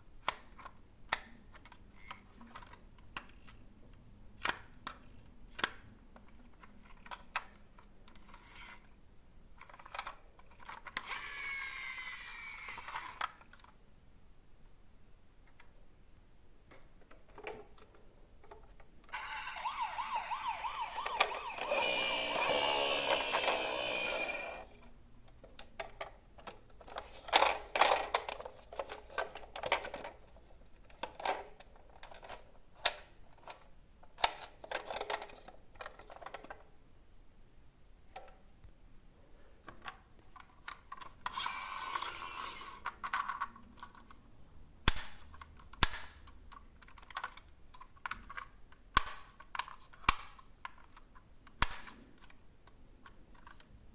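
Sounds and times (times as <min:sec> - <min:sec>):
toy electronic siren warbling: 0:19.1 - 0:24.6
toy cars clacking down a slope: 0:19.2 - 0:24.7, 0:41.0 - 0:43.9.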